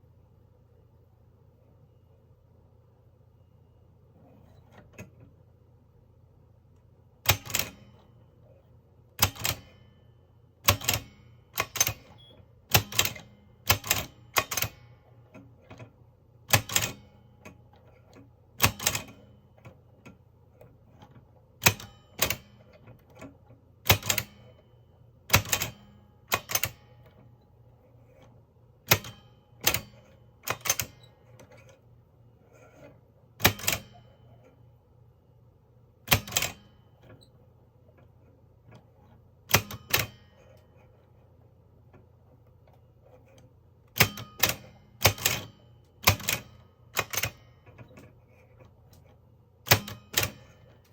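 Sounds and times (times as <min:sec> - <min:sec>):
typewriter clacks: 0:10.7 - 0:12.1, 0:12.7 - 0:14.8, 0:28.9 - 0:31.0, 0:44.0 - 0:47.4, 0:49.7 - 0:50.5.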